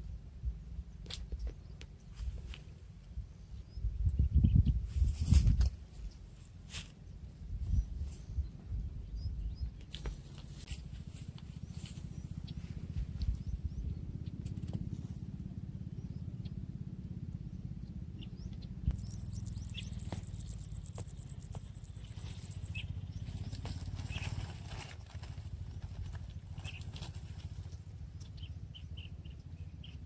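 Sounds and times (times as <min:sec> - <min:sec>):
low rumble: 0:07.1 - 0:30.0
faint chirps and clicks: 0:18.2 - 0:30.0
thin high buzz: 0:18.9 - 0:22.8.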